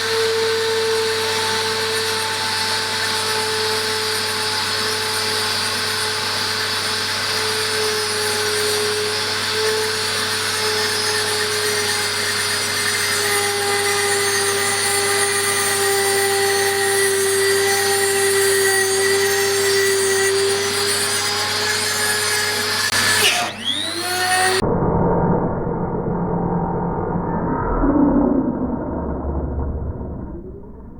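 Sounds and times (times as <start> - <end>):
grinder whining on metal: 0.0 - 24.6.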